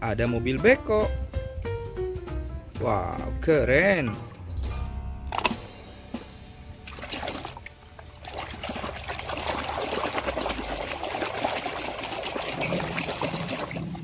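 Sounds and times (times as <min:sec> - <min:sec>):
water pouring and trickling: 0:06.8 - 0:14.0.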